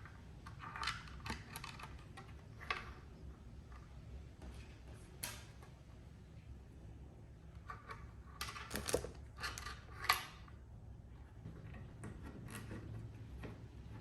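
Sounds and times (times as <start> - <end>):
small hard parts clicking and scraping: 0.1 - 3.1, 7.6 - 10.6.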